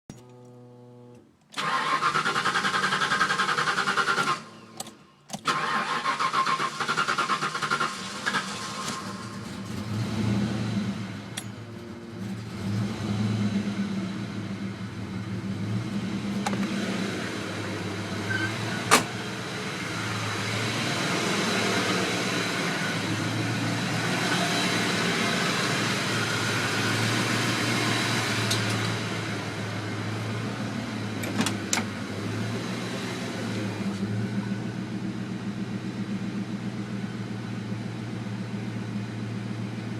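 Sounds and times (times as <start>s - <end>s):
car starter cranking: 0.1s - 10.0s
car engine idling: 0.1s - 32.4s, 33.2s - 39.9s.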